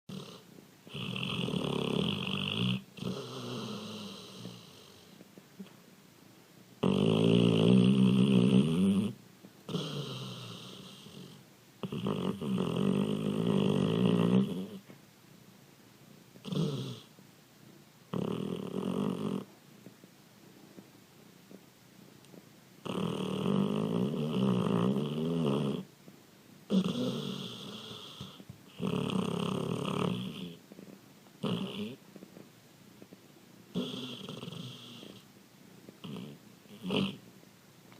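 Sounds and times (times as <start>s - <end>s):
dog snoring: 0.1s - 5.2s, 6.8s - 14.9s, 16.4s - 17.2s, 18.1s - 19.6s, 22.8s - 25.9s, 26.7s - 32.4s, 33.7s - 35.3s, 36.0s - 37.2s.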